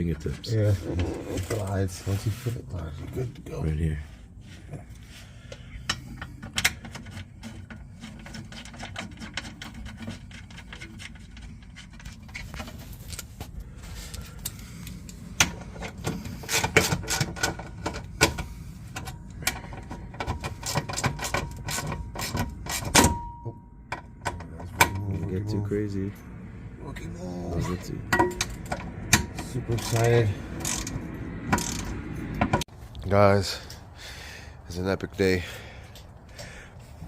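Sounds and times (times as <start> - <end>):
steady low hum: 0.0 - 37.0
metal tools clinking on bolts: 28.1 - 32.4.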